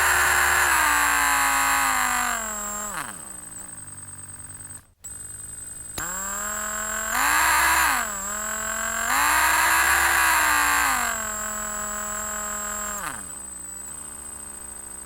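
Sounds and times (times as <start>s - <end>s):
electric drill motor whining: 0.0s - 15.0s.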